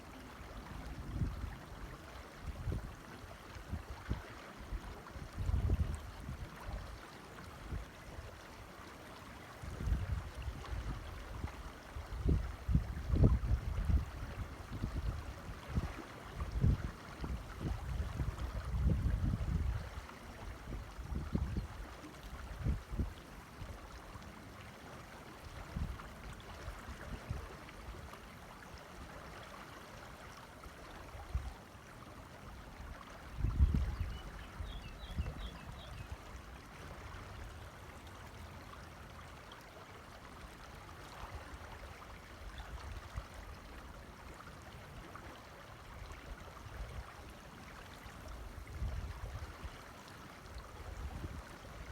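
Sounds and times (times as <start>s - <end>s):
wind gusts on microphone: 12.0s - 19.9s, 33.3s - 36.0s.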